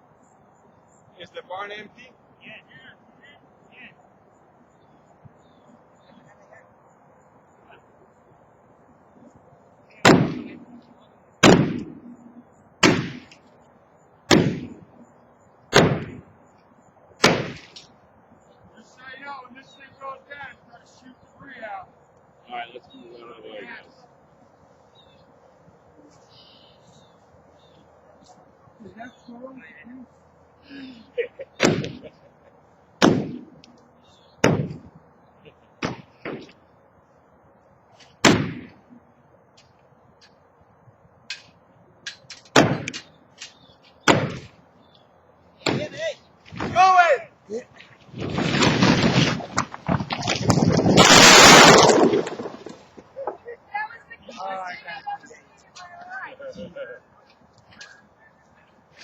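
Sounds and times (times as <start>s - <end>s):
sledgehammer blows ringing: 44.1s - 44.5s.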